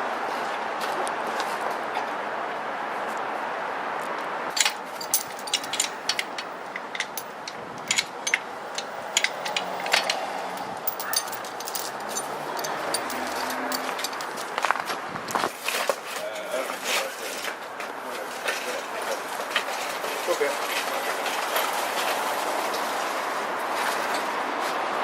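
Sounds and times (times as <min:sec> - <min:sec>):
metal parts and tools clinking: 0:04.5 - 0:15.5.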